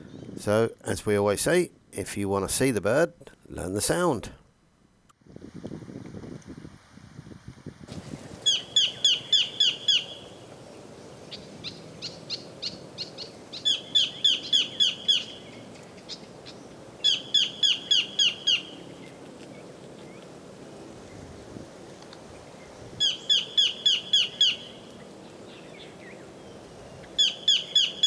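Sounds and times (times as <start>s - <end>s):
kingfisher calling: 8.4s - 19.0s, 23.0s - 24.9s, 27.2s - 28.0s.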